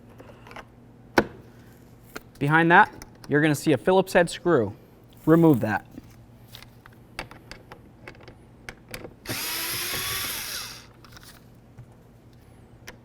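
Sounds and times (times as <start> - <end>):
power screwdriver running: 9.3 - 10.9.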